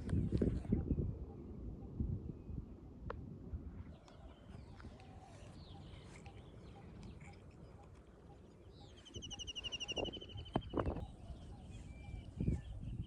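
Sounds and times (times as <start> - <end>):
faint birdsong: 3.6 - 13.0.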